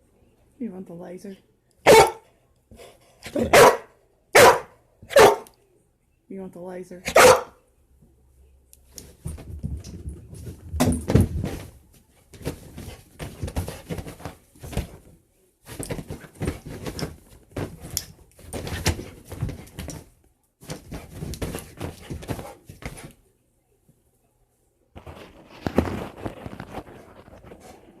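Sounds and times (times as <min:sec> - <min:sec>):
dog paws scrambling on floor: 0:09.0 - 0:23.2, 0:25.0 - 0:28.0.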